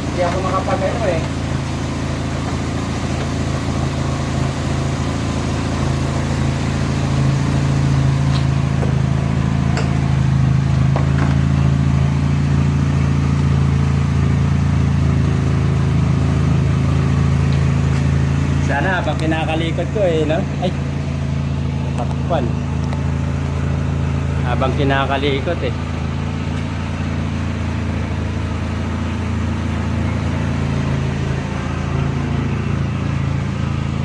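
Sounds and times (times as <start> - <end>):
vehicle engine idling: 0.0 - 34.0.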